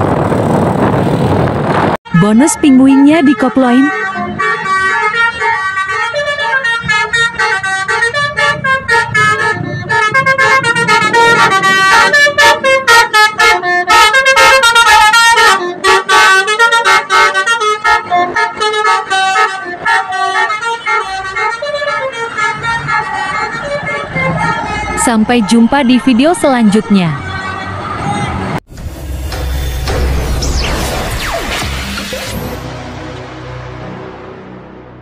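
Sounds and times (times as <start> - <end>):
multi-tone bus horn melody: 1.1 - 28.6.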